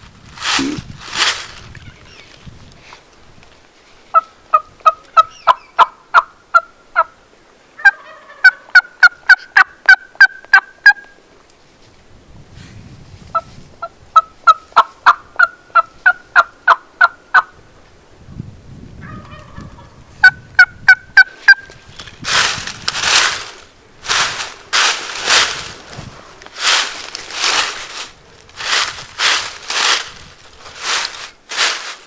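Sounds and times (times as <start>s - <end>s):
turkey yelping: 7.8s - 11.0s, 19.0s - 21.7s.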